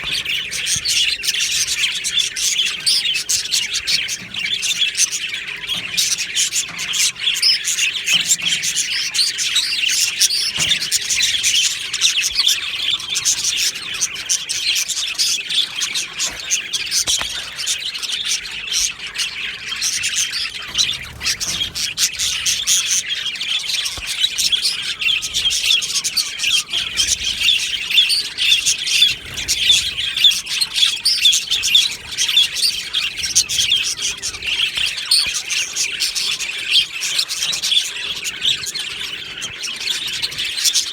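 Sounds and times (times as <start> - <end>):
bird squawks: 0.0 - 40.9
budgerigars chirping and chattering: 0.0 - 40.9.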